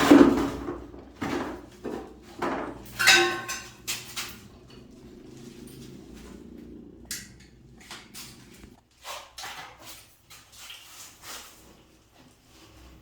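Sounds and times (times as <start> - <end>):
low steady hum: 0.1 - 8.8.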